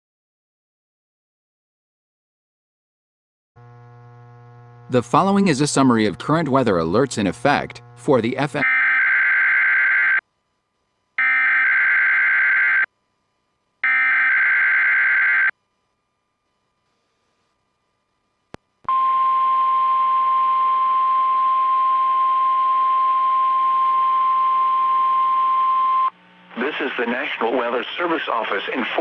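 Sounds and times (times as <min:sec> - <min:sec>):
radio static hiss: 0:04.9 - 0:08.7, 0:26.2 - 0:29.0
steady warning alarm tone: 0:04.9 - 0:10.2, 0:11.2 - 0:12.9, 0:13.8 - 0:15.5.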